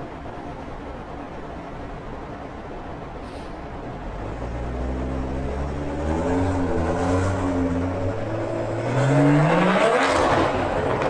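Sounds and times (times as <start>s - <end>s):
car engine accelerating: 4.2s - 11.0s.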